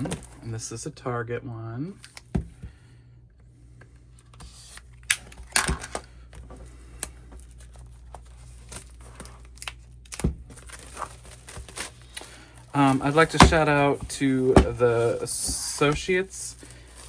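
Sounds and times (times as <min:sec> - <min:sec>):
packaging crinkling: 0:06.9 - 0:17.0.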